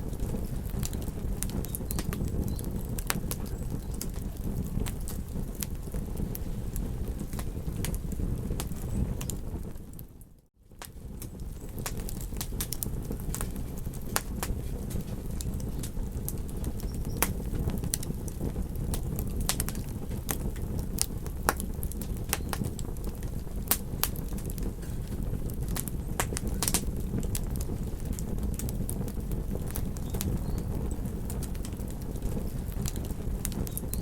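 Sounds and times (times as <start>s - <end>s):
campfire crackling and popping: 0.0s - 34.0s
steady low rumble: 11.1s - 34.0s.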